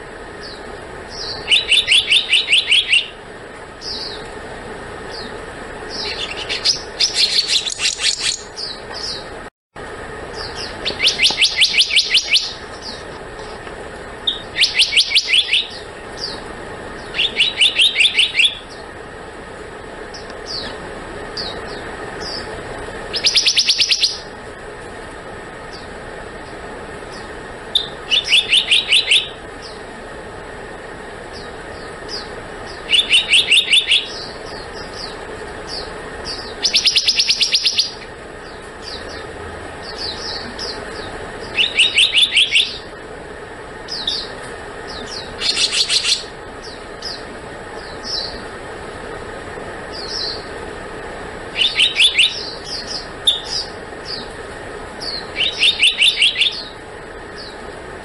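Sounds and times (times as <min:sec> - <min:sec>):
bird ringing call: 0:00.4 - 0:03.2, 0:10.4 - 0:13.0, 0:14.2 - 0:16.4, 0:17.0 - 0:18.8, 0:23.1 - 0:24.3, 0:27.7 - 0:29.8, 0:32.1 - 0:35.1, 0:35.7 - 0:38.1, 0:39.8 - 0:42.9, 0:51.6 - 0:54.2, 0:55.0 - 0:56.8.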